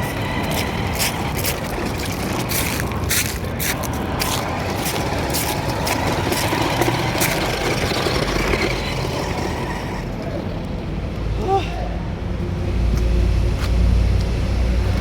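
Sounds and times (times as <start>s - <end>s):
toy car motor: 0.0s - 10.5s
wheels clicking and scraping: 0.0s - 11.4s.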